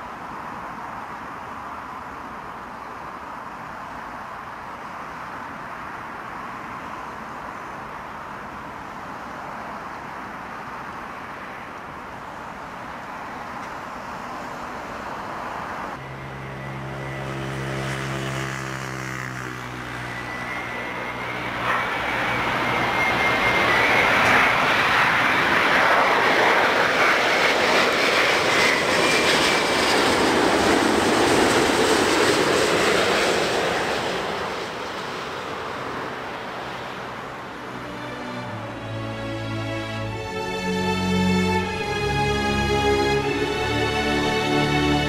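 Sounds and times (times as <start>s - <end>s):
jet engines rushing: 3.6s - 45.0s
high jet whine: 11.0s - 45.0s.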